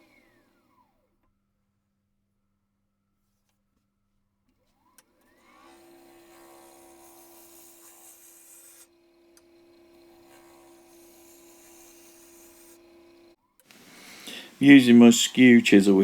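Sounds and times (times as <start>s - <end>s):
wood lathe whining and humming: 5.2s - 16.0s
chisel shaving wood with hissing: 5.4s - 16.0s.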